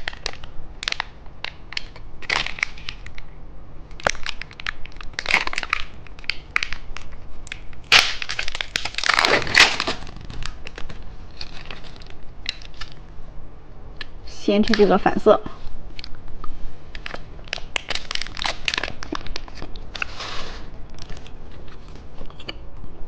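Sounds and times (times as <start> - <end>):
plastic wrapper crinkling: 0.0 - 3.3, 3.9 - 13.1, 16.9 - 20.2.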